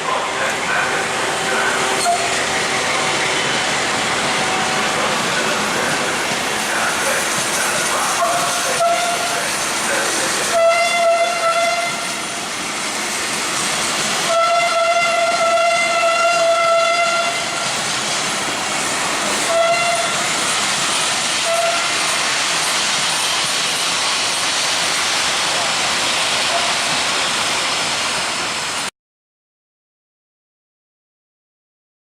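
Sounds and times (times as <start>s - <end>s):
locomotive whistle blasts: 2.0s - 2.4s, 8.7s - 9.4s, 10.5s - 12.2s, 14.3s - 17.6s, 19.5s - 20.2s, 21.4s - 22.0s.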